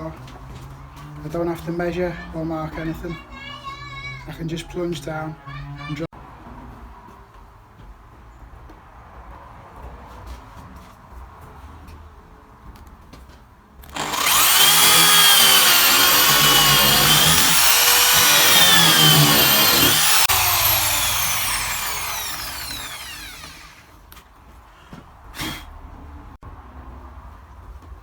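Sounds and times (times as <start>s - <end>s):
drill boring into wood: 13.8s - 23.9s.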